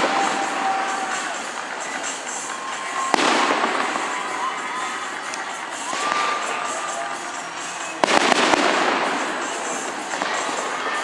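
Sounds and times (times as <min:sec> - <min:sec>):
rising whistle: 0:00.0 - 0:08.1
crowd cheering and shouting: 0:00.0 - 0:11.0.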